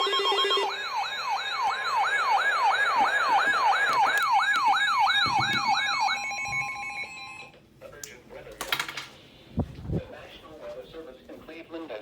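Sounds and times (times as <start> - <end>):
siren-like alert tone sweeping: 0.0 - 7.2.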